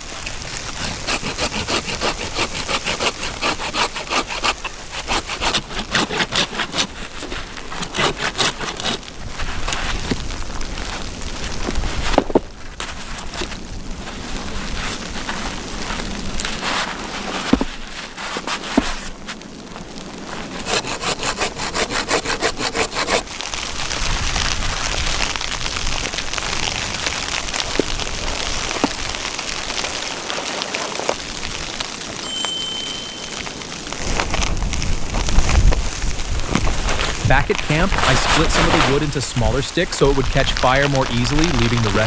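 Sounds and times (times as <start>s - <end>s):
hand saw strokes: 0.6s - 9.0s, 20.6s - 23.3s, 36.9s - 42.0s
steady hiss: 36.9s - 42.0s.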